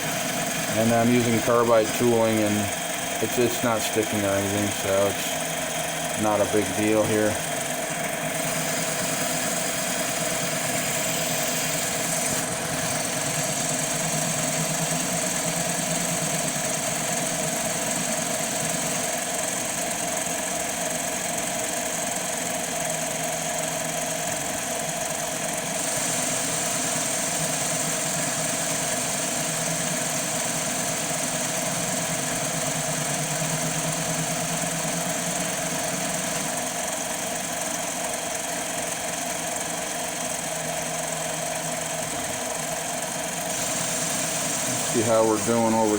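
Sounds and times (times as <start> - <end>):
cutting tool hiss: 0.0 - 19.1, 25.8 - 36.4, 43.4 - 45.9
lathe motor hum and whine: 0.0 - 45.9.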